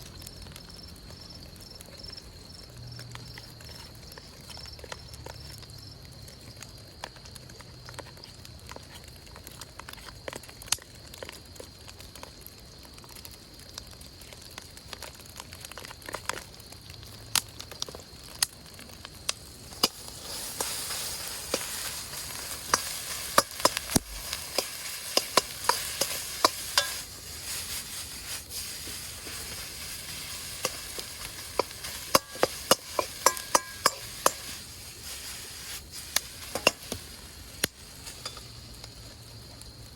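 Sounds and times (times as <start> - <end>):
food sizzling in a wok: 13.0 - 39.9
metal utensil clacking on wok: 22.4 - 27.0, 30.6 - 34.5.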